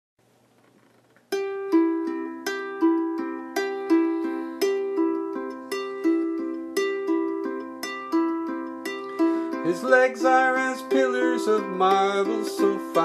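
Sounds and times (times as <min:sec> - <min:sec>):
fingerpicked string instrument: 0:00.5 - 0:13.0.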